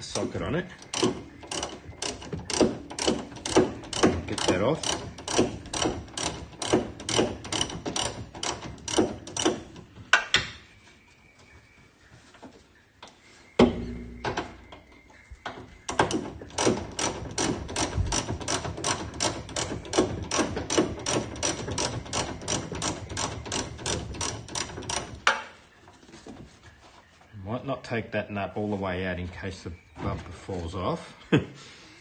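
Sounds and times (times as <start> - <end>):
ratchet wrench clicking: 0.8 - 9.8, 16.0 - 25.3
knocks: 13.6 - 14.8.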